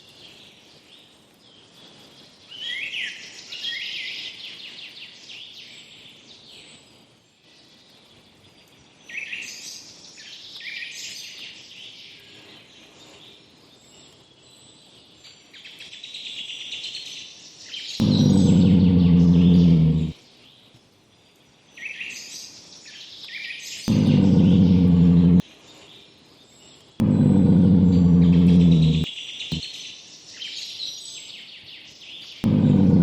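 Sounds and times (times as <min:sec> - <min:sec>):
birds chirping and trilling: 0:17.7 - 0:20.2, 0:23.7 - 0:29.1
loud low steady tone: 0:18.0 - 0:20.2, 0:23.9 - 0:25.4, 0:27.0 - 0:29.1, 0:32.4 - 0:33.0.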